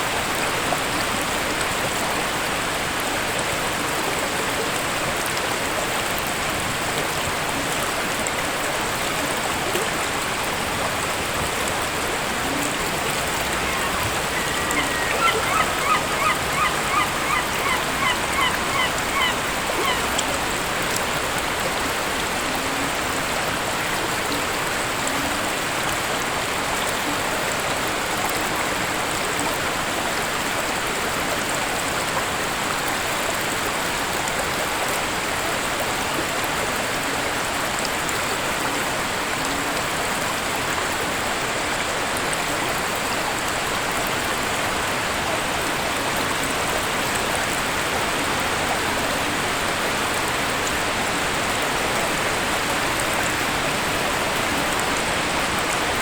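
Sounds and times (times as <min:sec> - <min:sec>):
waterfall roaring: 0:00.1 - 0:33.4
honking bird calls: 0:12.8 - 0:20.8.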